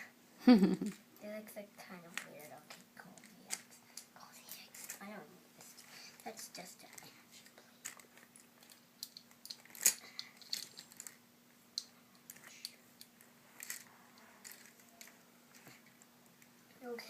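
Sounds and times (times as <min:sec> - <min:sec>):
plastic toy bricks clicking: 0:08.6 - 0:11.2.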